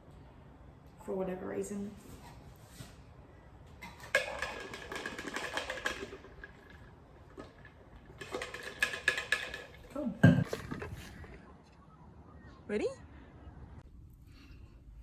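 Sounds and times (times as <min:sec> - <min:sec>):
ice cubes clinking in a cup: 0:03.9 - 0:09.9.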